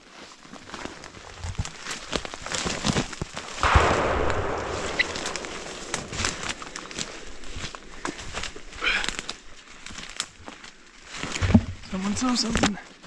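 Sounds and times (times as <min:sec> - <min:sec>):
footsteps in dry leaves: 0:00.0 - 0:13.0
rifle shot with echo: 0:03.6 - 0:08.0.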